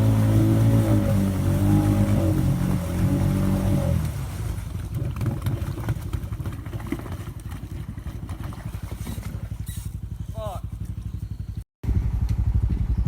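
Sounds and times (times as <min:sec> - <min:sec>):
atv engine idling: 0:03.8 - 0:13.0.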